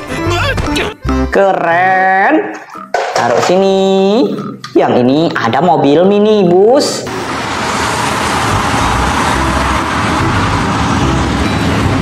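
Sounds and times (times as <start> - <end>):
road noise rush: 6.9 - 12.0
vehicle engine running: 7.1 - 12.0.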